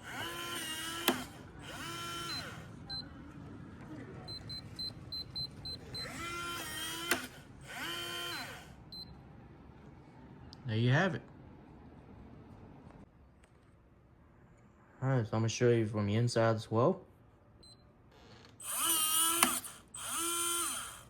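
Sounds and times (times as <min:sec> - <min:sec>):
lock motor whirring: 0:00.0 - 0:03.0, 0:05.6 - 0:08.8, 0:18.3 - 0:21.0
short keypad beeps: 0:04.3 - 0:06.2.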